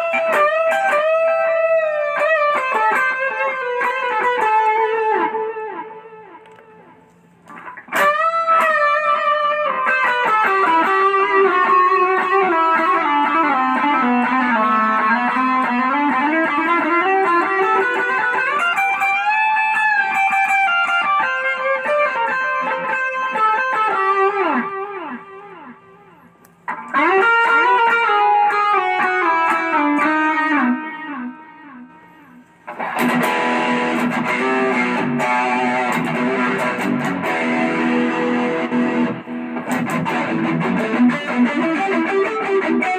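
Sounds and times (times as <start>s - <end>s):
distorted electric guitar lead: 0.0s - 26.1s, 26.7s - 42.9s
distorted strummed guitar chords: 26.7s - 42.9s.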